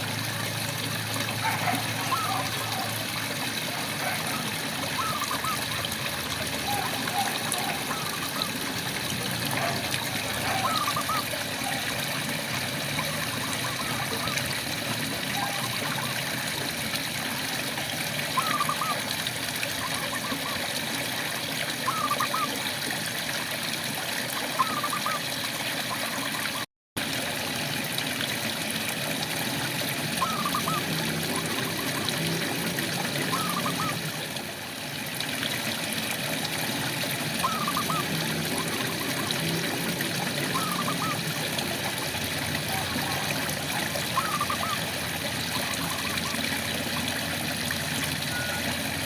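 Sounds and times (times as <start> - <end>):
frog chirping calls: 10.4 - 11.3, 30.2 - 31.0, 37.4 - 38.1, 44.1 - 44.8.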